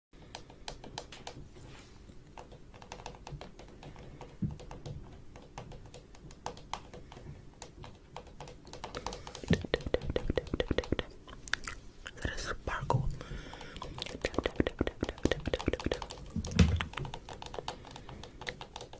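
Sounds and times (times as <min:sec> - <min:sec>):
light taps and clicks: 0:02.2 - 0:11.1, 0:13.5 - 0:18.9.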